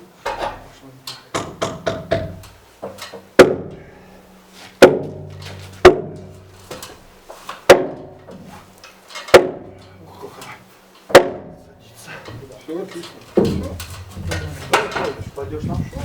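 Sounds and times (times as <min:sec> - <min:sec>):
hammer blows on wooden beam: 0:01.3 - 0:02.5, 0:03.3 - 0:06.6, 0:07.6 - 0:08.7, 0:09.3 - 0:10.0, 0:11.1 - 0:11.7.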